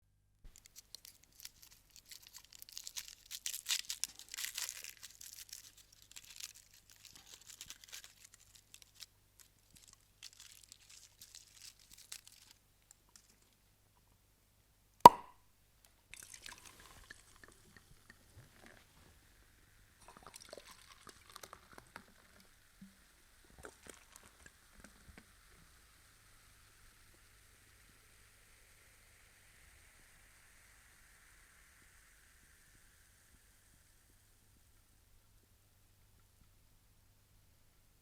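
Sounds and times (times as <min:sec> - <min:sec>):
foil wrapping crinkling: 0:00.5 - 0:13.5
cork popping: 0:15.1 - 0:15.4
faint fizz: 0:16.0 - 0:35.0.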